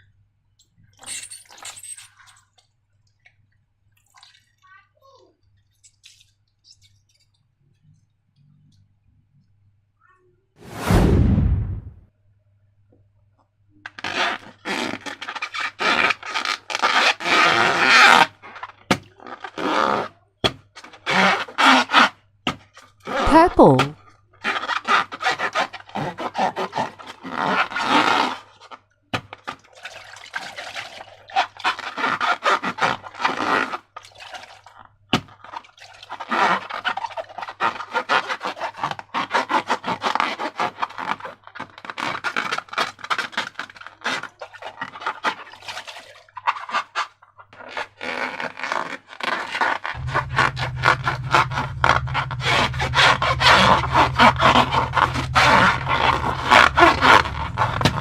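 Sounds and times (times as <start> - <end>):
steady low hum: 50.0 - 58.0.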